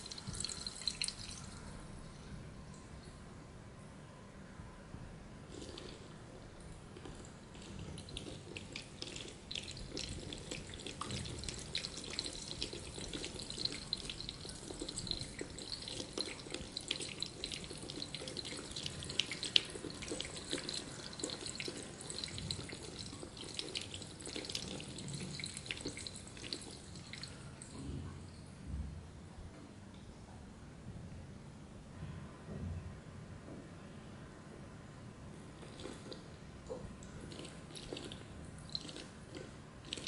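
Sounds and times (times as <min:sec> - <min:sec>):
water gurgling through a pipe: 0:00.0 - 0:01.7, 0:05.5 - 0:28.1, 0:35.5 - 0:40.0.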